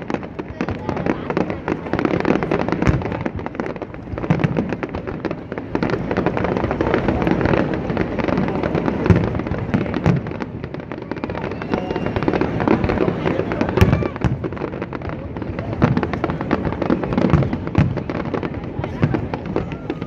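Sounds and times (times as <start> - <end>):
fireworks booms: 0.0 - 20.0
fireworks crackling: 0.0 - 20.0.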